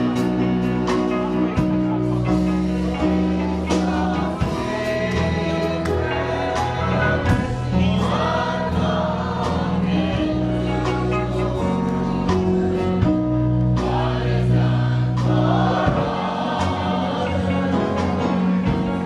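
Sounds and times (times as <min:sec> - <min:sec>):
drum and cymbal hits: 0:00.0 - 0:08.8, 0:15.2 - 0:17.1, 0:17.7 - 0:19.0
gospel choir singing: 0:00.0 - 0:19.0
worship band playing: 0:00.0 - 0:19.0.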